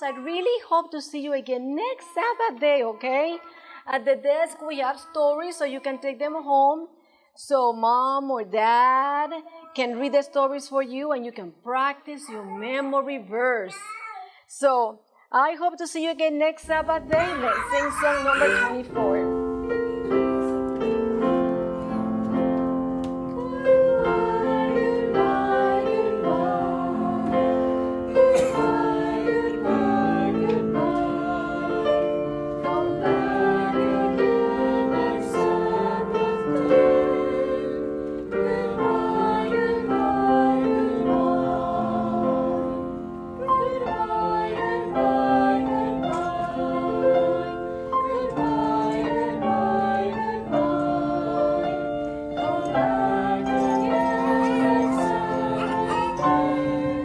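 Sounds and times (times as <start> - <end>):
children singing a song: 17.0 - 20.1, 23.2 - 57.0
instrumental accompaniment: 18.4 - 57.0.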